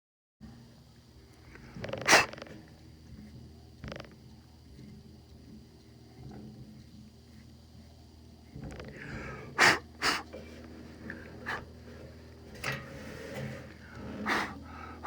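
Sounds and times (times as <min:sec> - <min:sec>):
low steady hum: 0:00.4 - 0:15.0
person puffing breath: 0:09.0 - 0:10.4, 0:11.2 - 0:11.7, 0:13.9 - 0:15.0.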